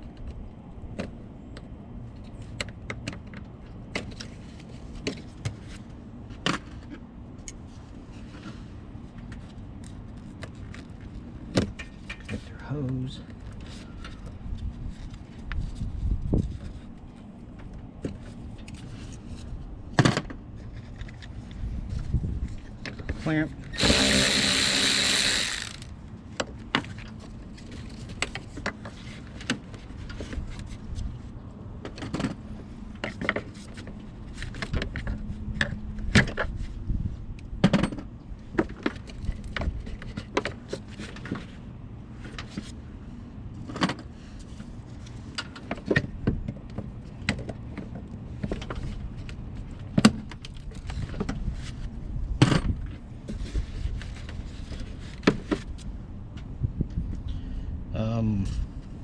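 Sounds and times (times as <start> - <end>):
hand tools clicking and knocking: 23.8 - 25.9.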